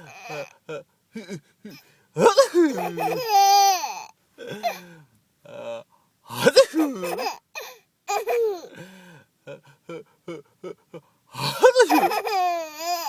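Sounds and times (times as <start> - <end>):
baby laughing: 2.3 - 4.0, 8.1 - 8.7, 11.5 - 13.0.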